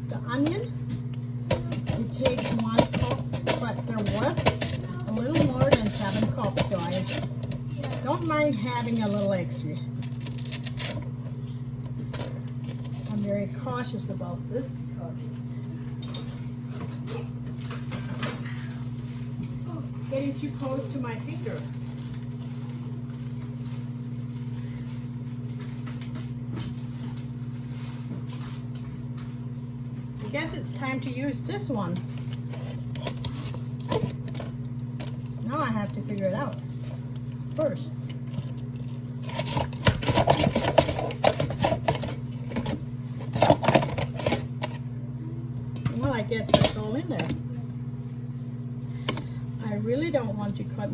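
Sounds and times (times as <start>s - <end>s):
low electrical hum: 0.0s - 50.9s.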